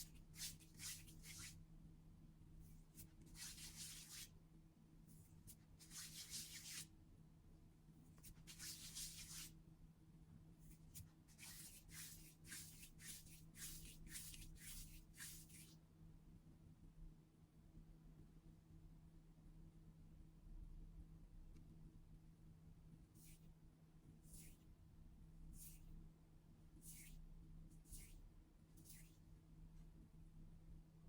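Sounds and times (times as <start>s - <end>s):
soft hissing swishes: 26.8s - 27.2s.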